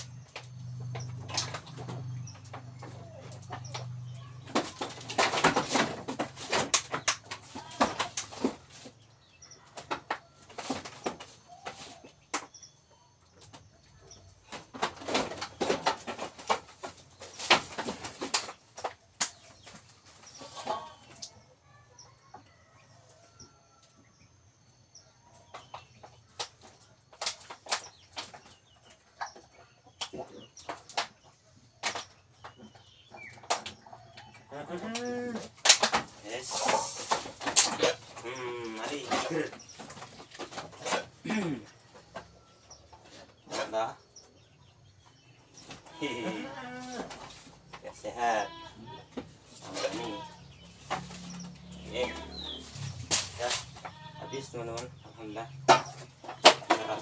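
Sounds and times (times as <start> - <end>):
goat scuffling and knocking: 0.0 - 12.6, 49.0 - 54.3
chickens clucking: 0.0 - 57.0.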